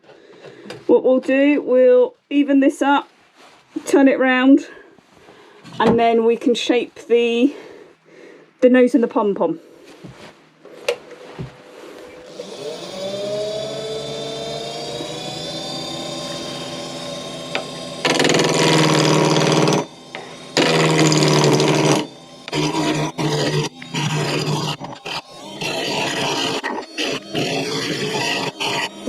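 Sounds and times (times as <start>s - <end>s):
lathe motor whining: 10.7s - 29.0s
tool cutting spinning wood: 11.6s - 29.0s.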